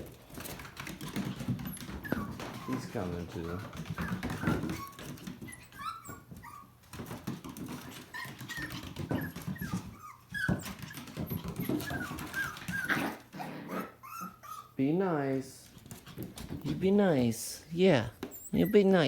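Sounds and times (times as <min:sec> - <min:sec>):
puppies whining and yipping: 0:00.4 - 0:14.8, 0:18.2 - 0:19.0.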